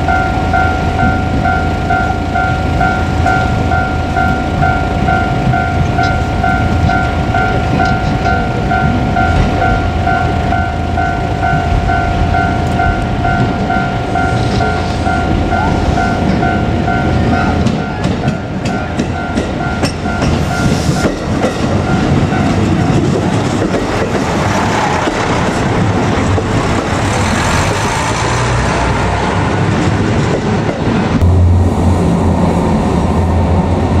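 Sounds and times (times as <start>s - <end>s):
deep low drone: 0.0s - 21.0s, 31.2s - 34.0s
level crossing bells ringing: 0.0s - 24.3s
train wheels clattering: 0.0s - 31.2s.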